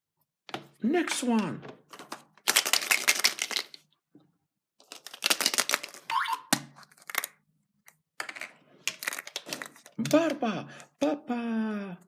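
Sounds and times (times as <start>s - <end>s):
foil wrapper crinkling: 2.4s - 3.8s, 4.8s - 6.1s.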